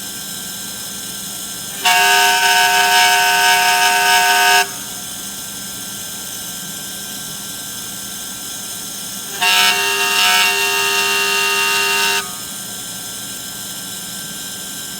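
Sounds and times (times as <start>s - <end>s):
machine hum: 1.6s - 5.6s, 9.0s - 13.2s.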